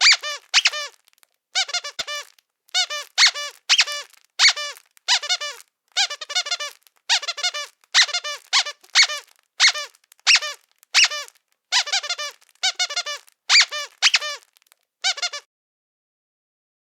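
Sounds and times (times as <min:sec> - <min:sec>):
squeaky dog toy squeaking: 0:00.0 - 0:15.5.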